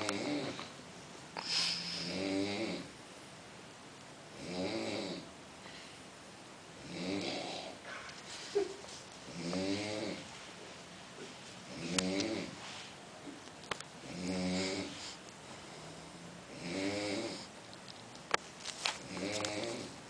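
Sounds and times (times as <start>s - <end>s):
man snoring: 0.0s - 0.6s, 1.7s - 2.9s, 4.4s - 5.3s, 6.8s - 7.8s, 9.3s - 10.2s, 11.7s - 12.6s, 14.0s - 15.0s, 15.9s - 17.5s, 19.1s - 20.0s.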